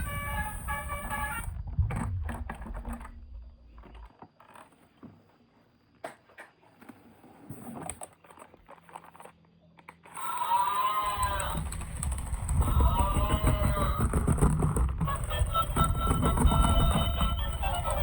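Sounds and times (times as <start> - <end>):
low rumble: 0.0 - 4.1, 11.0 - 18.0
plastic toys and packaging handled: 3.7 - 18.0.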